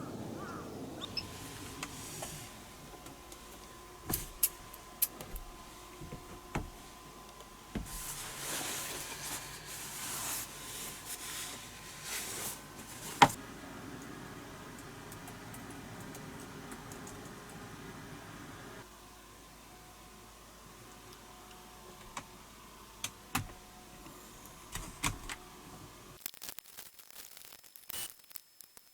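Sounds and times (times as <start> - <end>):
rustling: 0.5 - 13.4.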